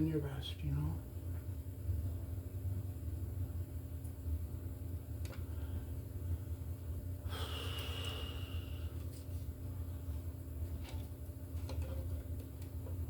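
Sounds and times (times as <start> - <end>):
steady low hum: 0.0 - 13.0
person exhaling through nose: 7.3 - 9.0.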